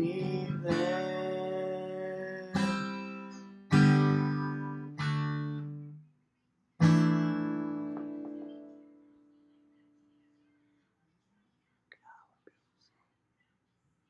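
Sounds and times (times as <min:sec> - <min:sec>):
acoustic guitar strummed chords: 0:00.0 - 0:06.0, 0:06.8 - 0:09.1.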